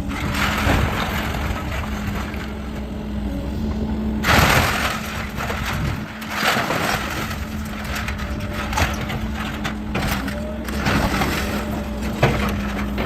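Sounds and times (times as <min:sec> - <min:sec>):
heavy machine engine running: 0:00.0 - 0:13.0
loud crash: 0:04.2 - 0:08.0
wood panels cracking and splintering: 0:04.2 - 0:13.0.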